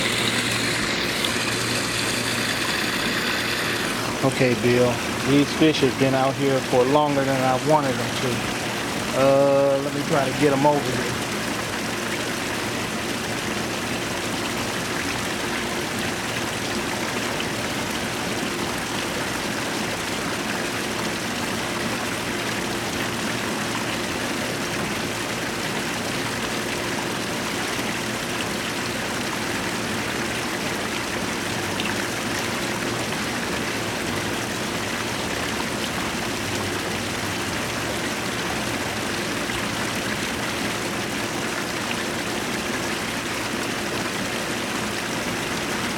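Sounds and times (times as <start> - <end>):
pond water splashing: 0.0 - 45.9.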